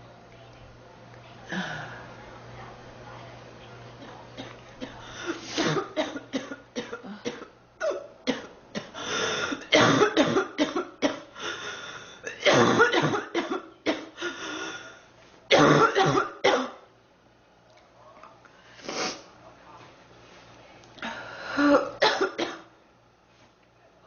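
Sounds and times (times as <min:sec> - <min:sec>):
woman coughing: 0:04.0 - 0:11.4, 0:12.2 - 0:14.4, 0:15.5 - 0:16.9, 0:21.6 - 0:22.7
woman clearing throat: 0:09.6 - 0:11.3, 0:12.3 - 0:14.2, 0:15.5 - 0:16.8.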